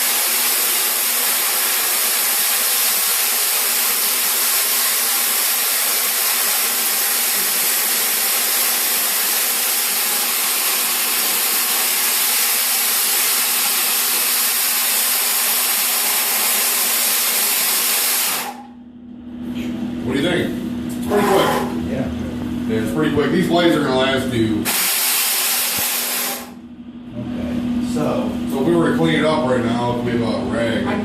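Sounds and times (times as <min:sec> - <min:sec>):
floor grinding machine hissing: 0:00.0 - 0:18.7, 0:24.7 - 0:26.6.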